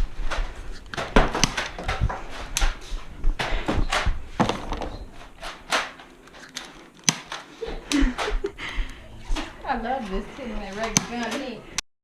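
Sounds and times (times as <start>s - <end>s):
sharp knocks and thumps: 0.0s - 6.0s.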